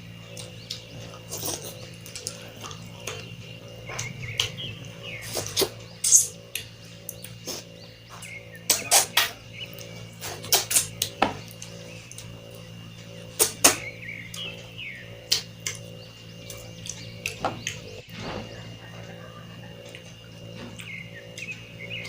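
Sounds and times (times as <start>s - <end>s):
person chewing and lip-smacking: 0.3s - 3.3s, 15.3s - 15.8s, 20.7s - 21.6s.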